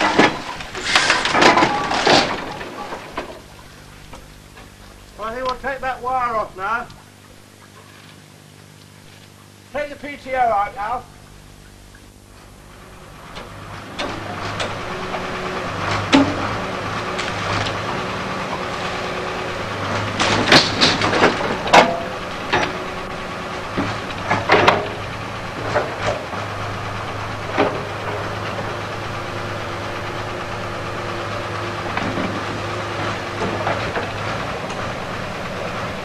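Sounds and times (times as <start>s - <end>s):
metallic clanks and knocks: 0.0s - 3.5s, 13.3s - 18.8s, 19.8s - 26.6s, 27.4s - 28.8s
heavy machinery humming: 0.0s - 36.0s.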